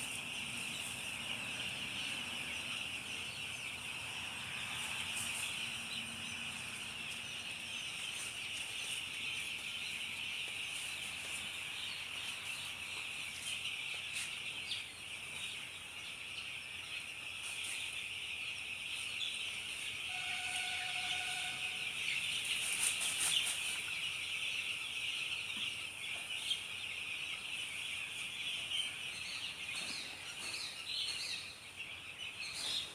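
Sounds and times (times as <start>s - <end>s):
chickens chirping: 0.0s - 32.9s.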